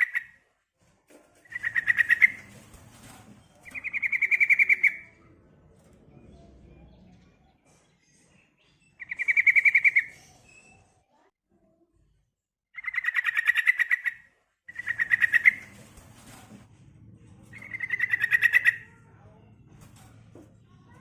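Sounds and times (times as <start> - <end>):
bird calling in fast trills: 1.5 - 2.4, 12.8 - 15.6, 17.6 - 18.8.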